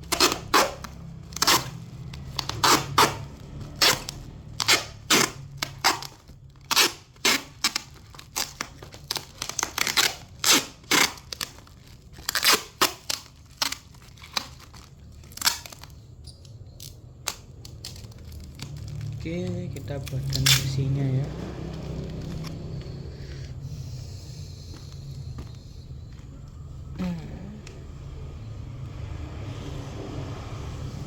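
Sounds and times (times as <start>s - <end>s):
packing tape tearing: 0.0s - 22.9s
plastic wrap crinkling: 0.0s - 23.5s.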